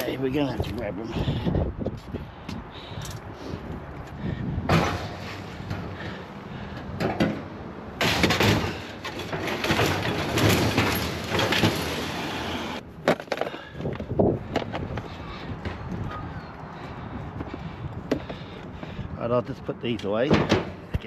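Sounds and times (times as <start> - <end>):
scrap rattling and scraping: 4.7 - 6.2, 6.8 - 15.8.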